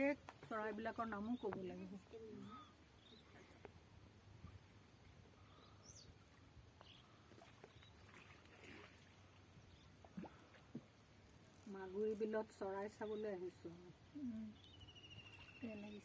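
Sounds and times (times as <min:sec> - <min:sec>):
faint bird calls: 0:01.2 - 0:03.7.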